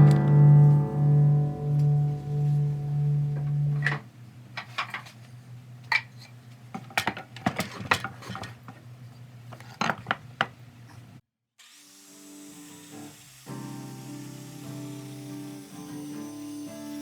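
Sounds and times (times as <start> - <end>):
faint low hum: 0.0 - 4.4.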